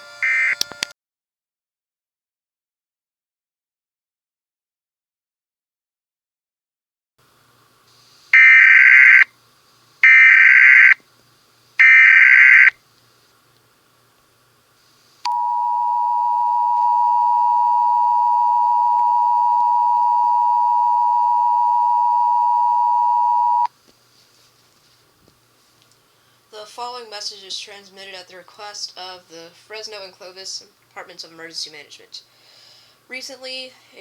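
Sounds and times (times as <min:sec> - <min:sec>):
shrill two-tone alert signal: 0:00.0 - 0:00.7, 0:08.4 - 0:09.2, 0:15.3 - 0:23.7
screechy digital data bursts: 0:08.4 - 0:09.3, 0:10.0 - 0:11.0, 0:11.8 - 0:12.7.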